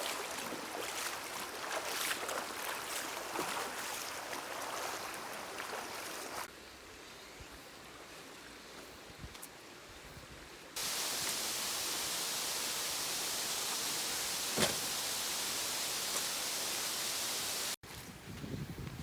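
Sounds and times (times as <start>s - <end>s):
faint stream murmur: 0.0s - 17.8s
river water rushing: 10.8s - 17.8s.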